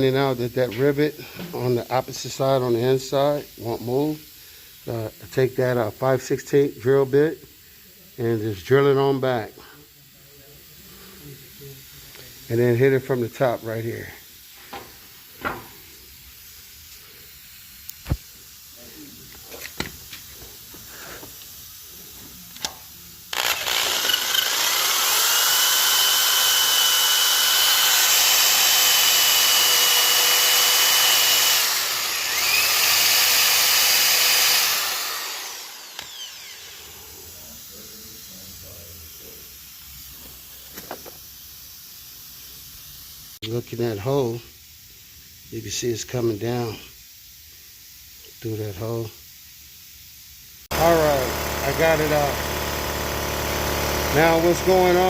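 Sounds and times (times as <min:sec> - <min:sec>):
power drill whining: 0:23.3 - 0:37.2, 0:50.7 - 0:55.0.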